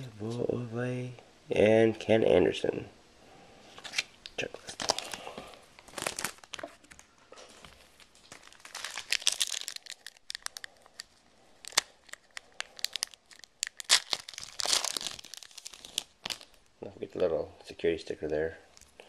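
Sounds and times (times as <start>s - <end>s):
wrapper crinkling and tearing: 3.8s - 16.7s.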